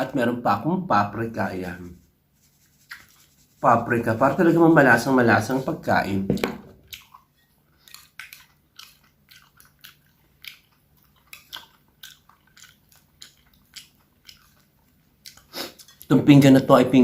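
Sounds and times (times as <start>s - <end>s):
chewing and biting: 6.8s - 16.1s.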